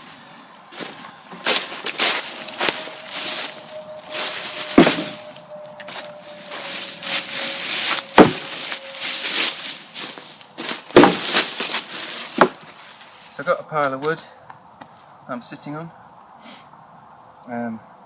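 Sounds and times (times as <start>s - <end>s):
footsteps crunching through dry leaves: 0.0s - 13.6s
dead wood cracking: 10.4s - 12.7s.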